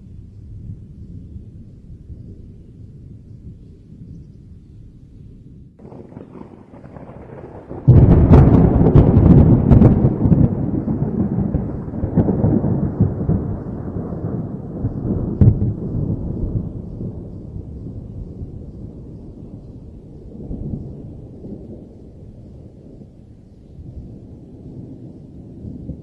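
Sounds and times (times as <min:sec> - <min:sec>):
rolling thunder rumble: 0:00.0 - 0:26.0
thunder clap crackling: 0:05.8 - 0:23.2.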